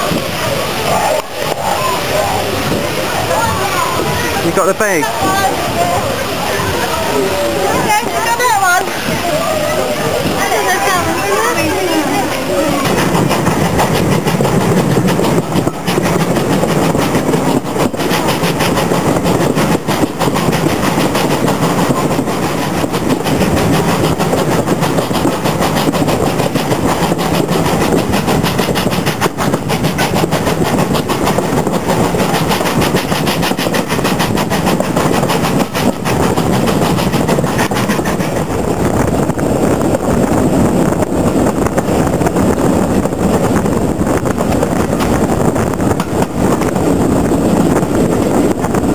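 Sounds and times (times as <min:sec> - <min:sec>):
train rumbling on track: 0:00.0 - 0:48.9
train wheel clicks and knocks: 0:11.4 - 0:39.3, 0:41.4 - 0:48.9.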